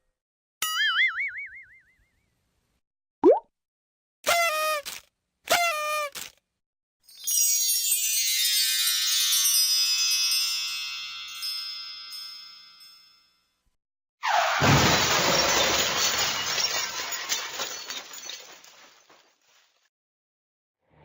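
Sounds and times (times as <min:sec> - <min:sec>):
shimmering chime tones: 0:07.0 - 0:13.5
glass shards tinkling: 0:07.1 - 0:13.2, 0:14.6 - 0:19.3
glass breaking: 0:14.3 - 0:19.4.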